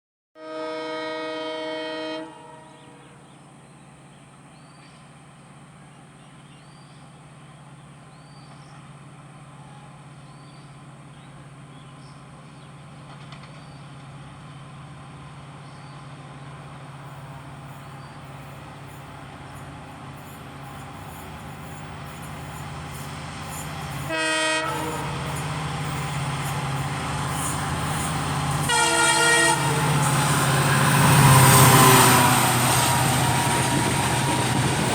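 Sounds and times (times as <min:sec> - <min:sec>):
locomotive multi-note horn: 0:00.4 - 0:03.3, 0:23.9 - 0:34.9
locomotive engine drone: 0:09.3 - 0:34.9.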